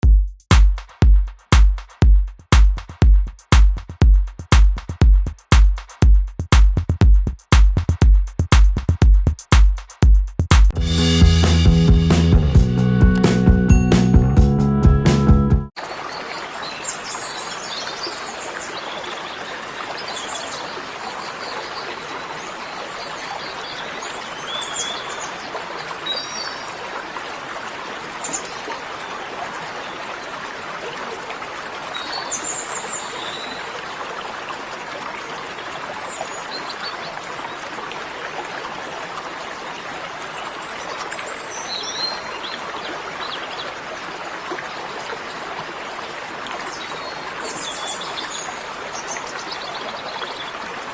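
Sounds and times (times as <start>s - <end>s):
running water rushing: 10.7s - 14.3s, 15.7s - 50.9s.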